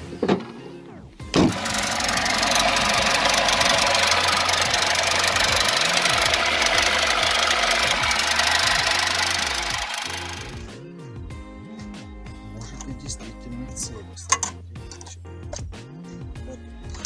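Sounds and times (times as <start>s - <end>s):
car engine starting and clattering: 1.3s - 10.7s.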